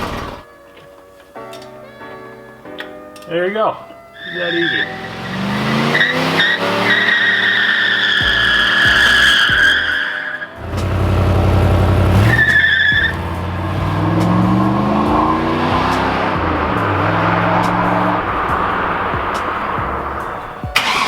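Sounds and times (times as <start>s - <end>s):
car engine revving: 0.0s - 0.4s, 4.2s - 21.0s
tires squealing: 4.2s - 21.0s.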